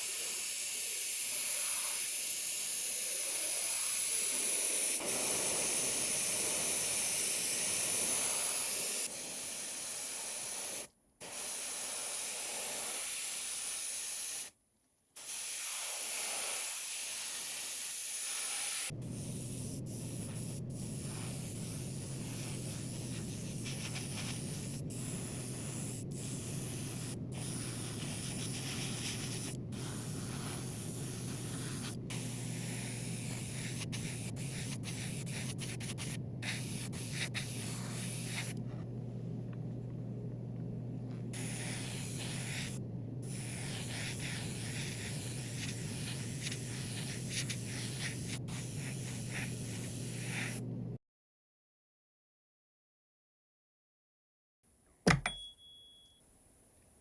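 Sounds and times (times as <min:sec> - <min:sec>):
compressed air hissing: 0:00.0 - 0:14.5, 0:15.2 - 0:51.0
steady low hum: 0:18.9 - 0:51.0
sanding rub: 0:19.1 - 0:38.8, 0:41.4 - 0:50.7.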